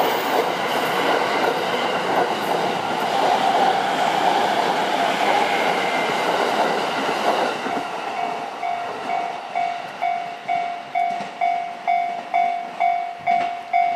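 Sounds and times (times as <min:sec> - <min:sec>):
electric train passing: 0:00.0 - 0:13.9
level crossing bell ringing: 0:08.2 - 0:13.9.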